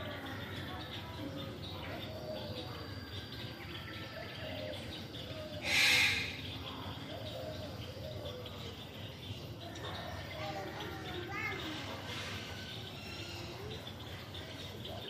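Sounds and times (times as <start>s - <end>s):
faint background chirps: 0.0s - 15.0s
cockatoo screech: 5.6s - 6.4s.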